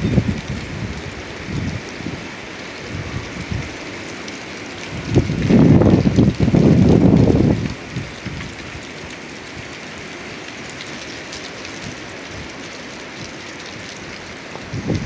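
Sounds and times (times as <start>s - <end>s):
strong wind blowing: 0.0s - 4.1s, 4.8s - 9.8s, 14.3s - 15.0s.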